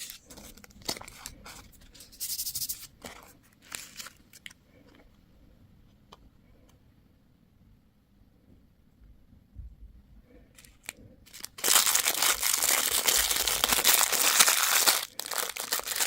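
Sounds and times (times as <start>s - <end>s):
packaging crinkling and tearing: 0.0s - 1.7s, 3.6s - 4.6s, 10.6s - 16.0s.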